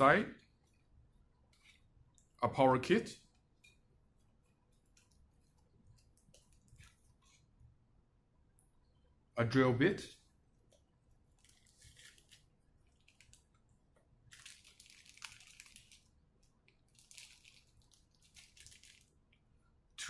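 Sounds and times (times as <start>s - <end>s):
plastic packaging crinkling: 11.2s - 13.6s, 14.2s - 19.2s.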